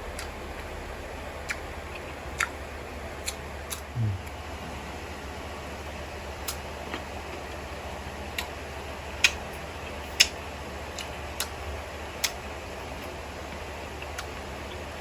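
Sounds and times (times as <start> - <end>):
low hum: 3.8 - 5.2
mouth clicks and smacks: 9.2 - 9.4.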